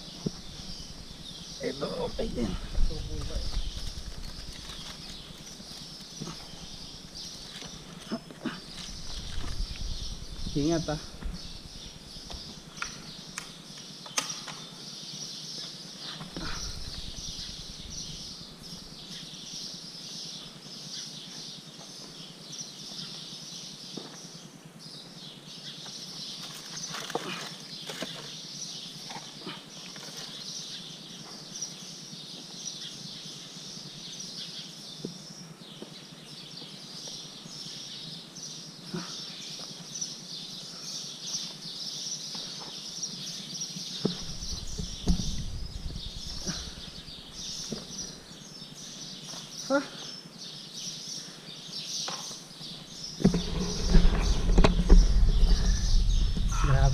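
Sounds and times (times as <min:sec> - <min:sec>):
knocks and scrapes on rock: 0:53.0 - 0:56.9.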